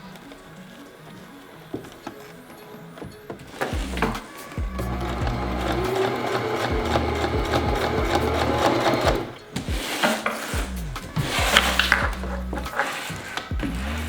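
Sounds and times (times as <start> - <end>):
electric sewing machine stitching: 3.6 - 9.5.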